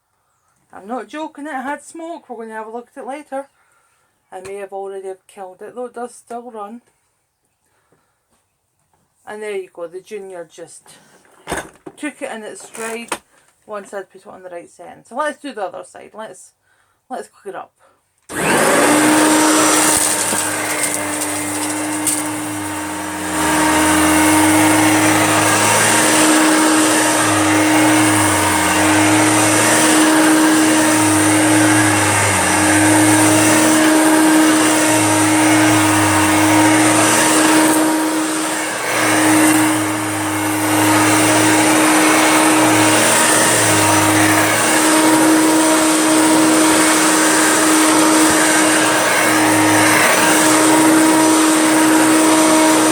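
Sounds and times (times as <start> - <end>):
upright vacuum cleaner running: 18.3 - 52.9.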